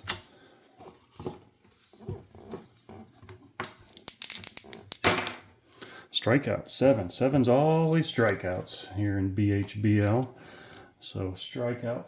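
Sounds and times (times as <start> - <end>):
dice rolling clicks: 3.9 - 5.4.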